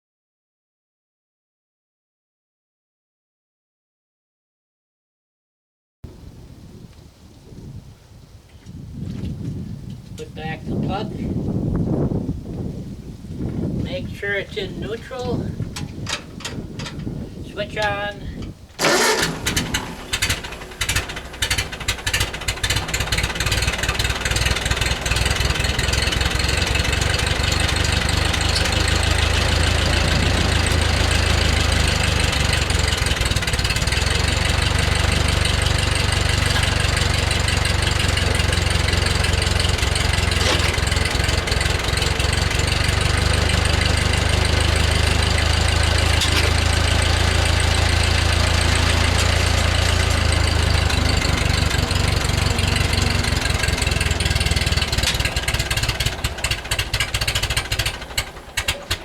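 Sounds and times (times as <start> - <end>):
tractor engine idling: 13.8 - 59.0.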